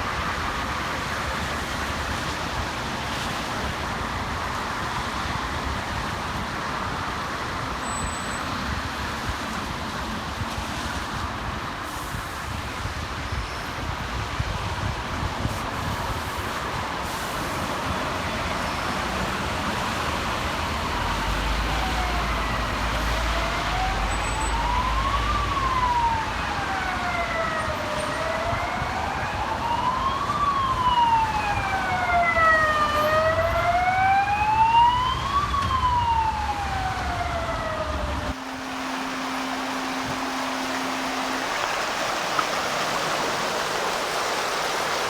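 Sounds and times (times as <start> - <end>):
emergency vehicle siren wailing: 17.1 - 45.0
steady rushing noise: 37.5 - 45.0.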